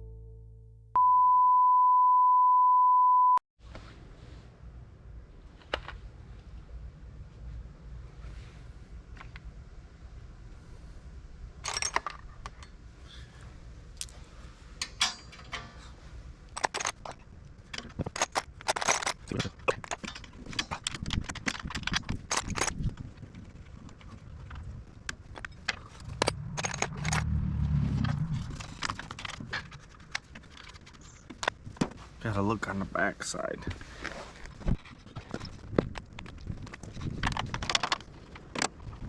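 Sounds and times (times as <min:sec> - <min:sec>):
metal tools clinking: 0:11.6 - 0:12.7, 0:14.8 - 0:22.9, 0:25.3 - 0:27.4
low rumble: 0:22.7 - 0:30.8.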